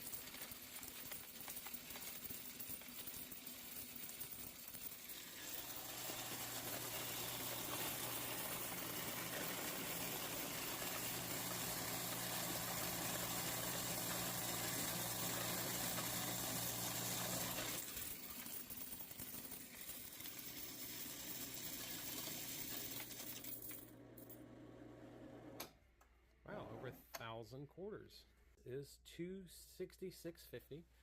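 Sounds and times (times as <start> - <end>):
coins passing through counter: 0.0 - 24.4
coin counter motor hum: 0.0 - 25.6.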